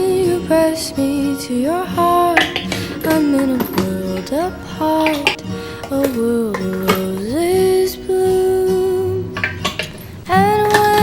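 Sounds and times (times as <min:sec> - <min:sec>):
light kitchenware clinks: 0:05.0 - 0:07.4.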